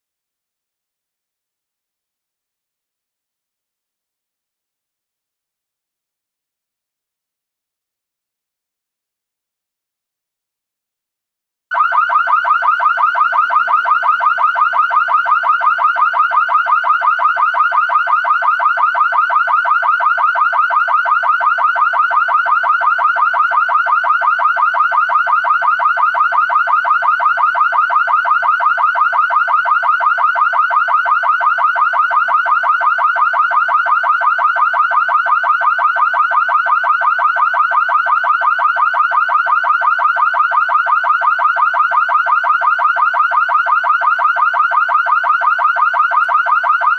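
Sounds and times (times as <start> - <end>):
car alarm siren warbling: 11.7 - 46.9.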